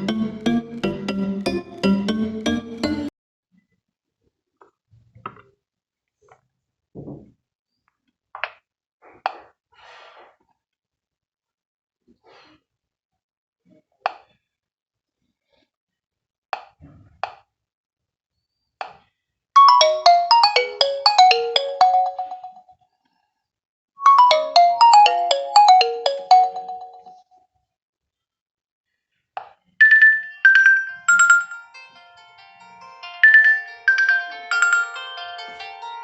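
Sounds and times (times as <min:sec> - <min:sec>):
phone ringtone melody: 0:00.0 - 0:03.1, 0:19.6 - 0:22.7, 0:24.0 - 0:27.2, 0:29.9 - 0:31.6, 0:33.2 - 0:35.9.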